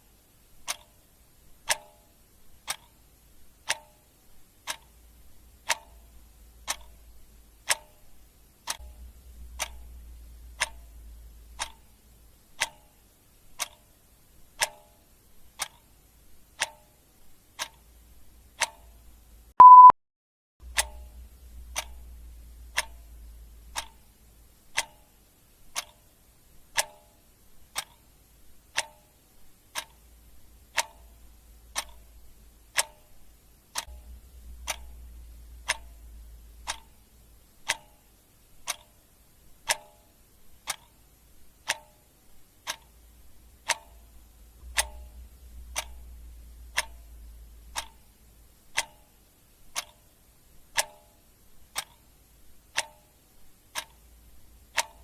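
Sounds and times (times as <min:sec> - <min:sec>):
clock ticking: 0:00.5 - 0:19.9, 0:20.6 - 0:55.0
short high beep: 0:19.6 - 0:20.0.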